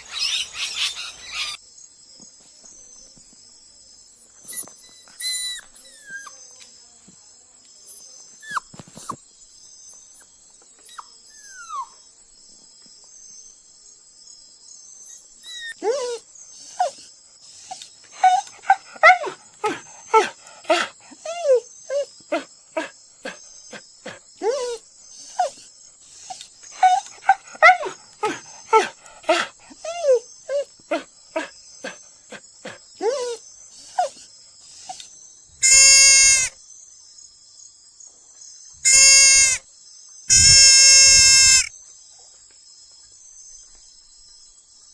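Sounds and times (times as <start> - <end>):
animal calls: 0.0 - 1.6, 15.2 - 35.0, 35.6 - 36.5, 38.8 - 39.6, 40.3 - 41.7
insects chirring: 0.0 - 44.9.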